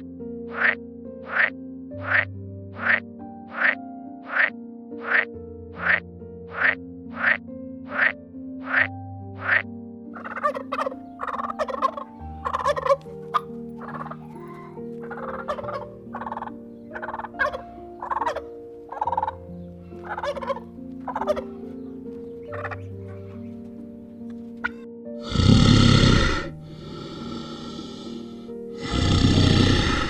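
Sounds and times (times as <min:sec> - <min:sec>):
soft background music: 0:00.0 - 0:30.0
fowl calling: 0:00.5 - 0:09.6, 0:10.2 - 0:23.7.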